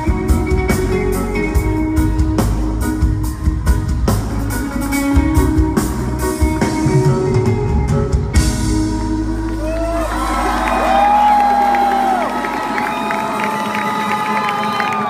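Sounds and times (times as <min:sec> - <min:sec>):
live reggae band: 0:00.0 - 0:14.3
audience whistling and cheering: 0:08.9 - 0:15.0.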